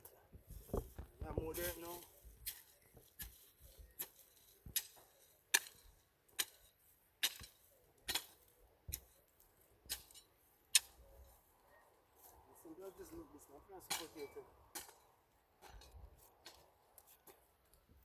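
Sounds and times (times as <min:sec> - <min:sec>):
digging tool striking ground: 0:00.8 - 0:11.4, 0:13.8 - 0:17.4.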